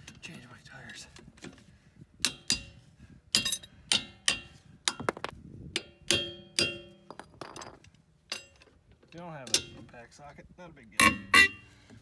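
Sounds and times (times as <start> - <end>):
hammer striking metal socket: 5.0 - 5.3.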